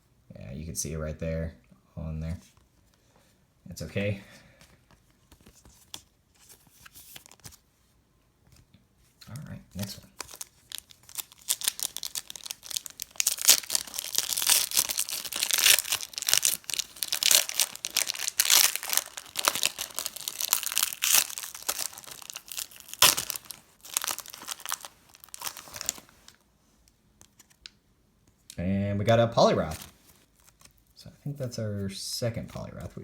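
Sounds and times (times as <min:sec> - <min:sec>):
wrapper tearing and crinkling: 0:09.8 - 0:26.4, 0:29.5 - 0:30.9.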